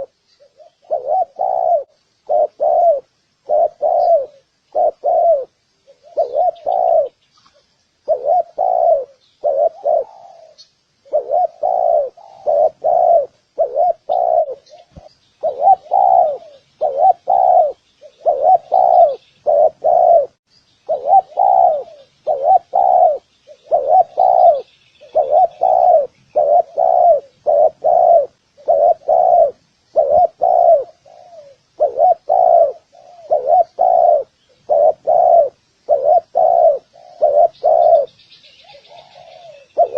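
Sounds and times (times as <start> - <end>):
doves cooing: 0.0 - 39.9
small birds chirping: 0.0 - 39.9.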